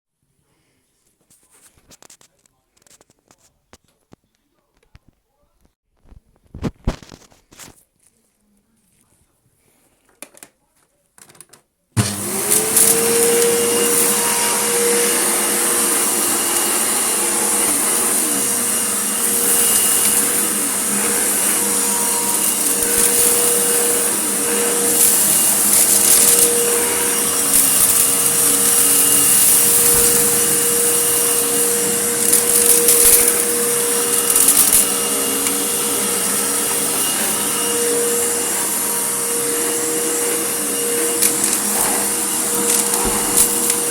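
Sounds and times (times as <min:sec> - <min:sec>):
vacuum cleaner whining: 0:12.0 - 0:43.9
grit crackling in vacuum: 0:12.5 - 0:37.6.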